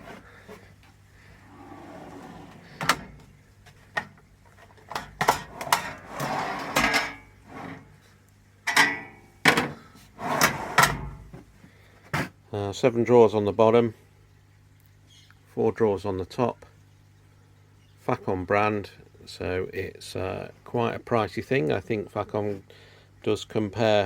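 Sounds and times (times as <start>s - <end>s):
drawer sliding rattle: 1.4s - 3.2s, 4.9s - 7.9s, 10.2s - 11.2s
metal drawers clacking: 1.5s - 3.3s, 4.0s - 7.9s, 8.7s - 11.2s.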